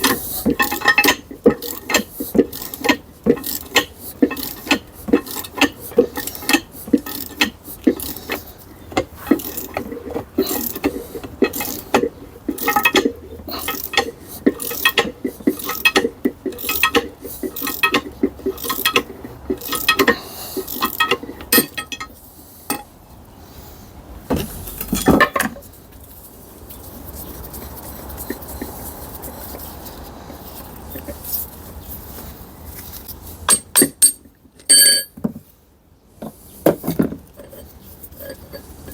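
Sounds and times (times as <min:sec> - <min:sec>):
metal parts clinking on bench: 0:00.0 - 0:07.5, 0:12.6 - 0:17.0, 0:19.6 - 0:22.1, 0:33.5 - 0:35.3
metal parts clattering: 0:00.0 - 0:08.4, 0:09.0 - 0:22.1, 0:33.5 - 0:35.2.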